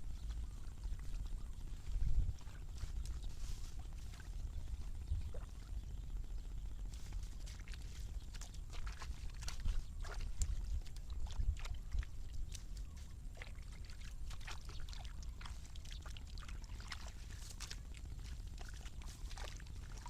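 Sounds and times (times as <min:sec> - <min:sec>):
low rumble: 0:00.0 - 0:12.9
water splashing and sloshing: 0:00.1 - 0:20.0.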